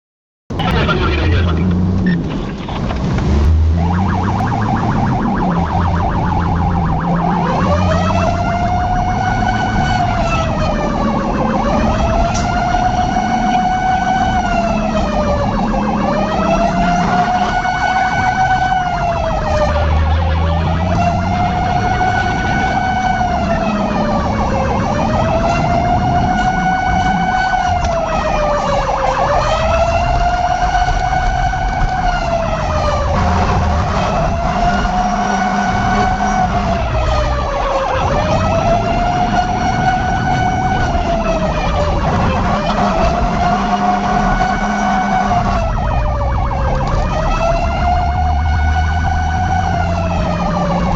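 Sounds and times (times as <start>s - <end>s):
vehicle engine rumble: 0.5s - 50.9s
fire truck siren: 0.6s - 50.9s.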